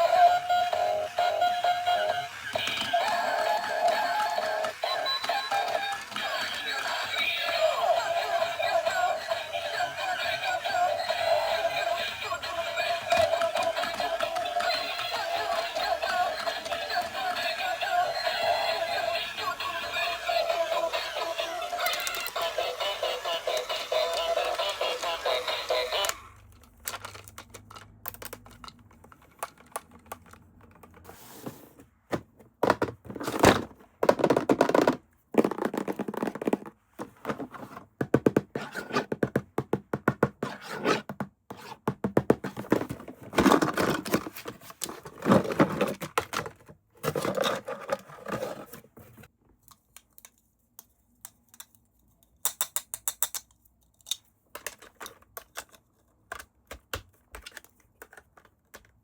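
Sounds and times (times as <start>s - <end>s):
toy packaging clicks and scrapes: 0.0s - 31.1s, 42.5s - 59.0s.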